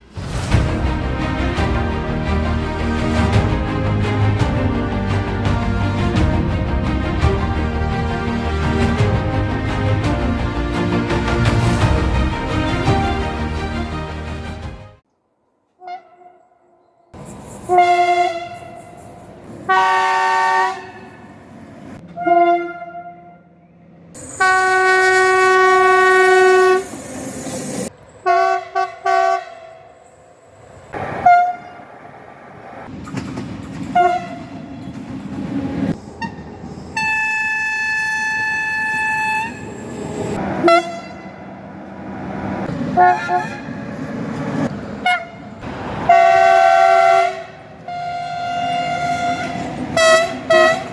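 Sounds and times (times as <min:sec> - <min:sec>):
low rumble of trains: 0:00.0 - 0:14.8, 0:17.2 - 0:50.9
train horn blasts: 0:15.8 - 0:16.5, 0:17.6 - 0:19.0, 0:19.7 - 0:21.2, 0:22.1 - 0:23.5, 0:24.2 - 0:26.9, 0:28.2 - 0:29.8, 0:31.2 - 0:31.8, 0:33.9 - 0:34.6, 0:36.2 - 0:39.8, 0:40.4 - 0:41.4, 0:42.9 - 0:43.8, 0:45.0 - 0:50.9.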